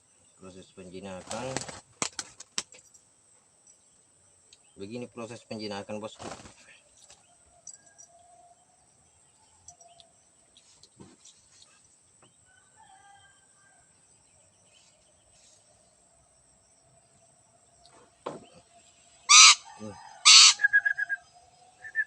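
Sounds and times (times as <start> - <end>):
faint bird call: 19.3 - 22.0.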